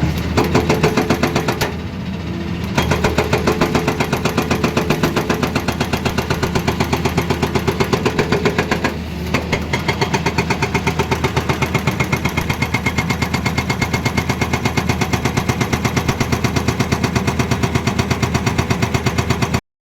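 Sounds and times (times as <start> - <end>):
excavator engine running: 0.0 - 19.6
hydraulic breaker hammering: 0.0 - 19.6.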